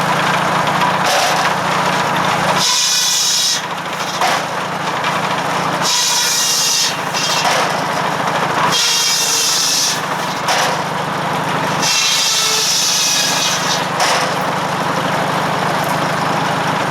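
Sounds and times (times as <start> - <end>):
circular saw cutting logs: 0.0 - 16.9
tractor engine running: 0.0 - 16.9.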